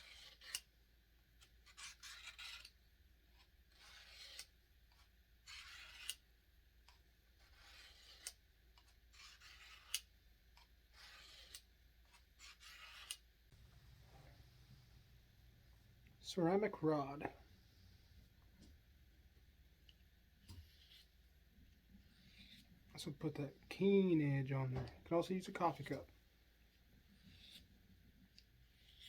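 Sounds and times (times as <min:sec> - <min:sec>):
knife scraping on sharpener: 0:00.0 - 0:00.7, 0:01.6 - 0:02.8, 0:03.7 - 0:06.2, 0:07.4 - 0:10.1, 0:10.9 - 0:13.2, 0:20.4 - 0:21.2, 0:22.1 - 0:22.7, 0:27.1 - 0:27.8, 0:28.7 - 0:29.0.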